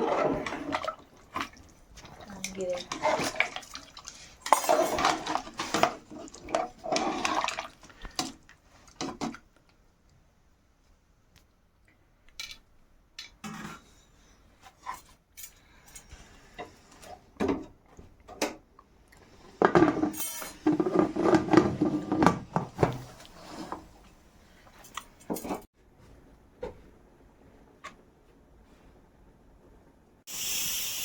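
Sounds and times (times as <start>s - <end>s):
metal utensils and pots clattering: 0.0s - 9.4s, 19.5s - 24.0s, 24.8s - 25.7s.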